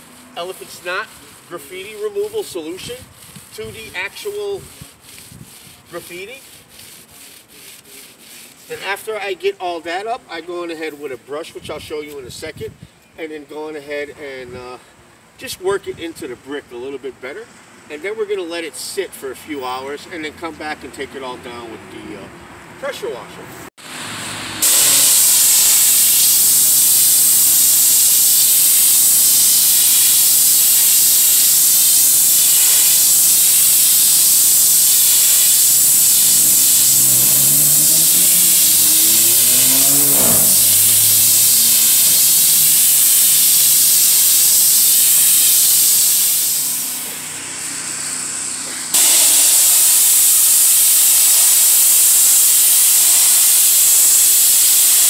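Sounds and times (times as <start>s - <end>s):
sprayer hissing: 24.6s - 47.3s, 49.0s - 55.0s
pitched tone: 34.8s - 41.7s.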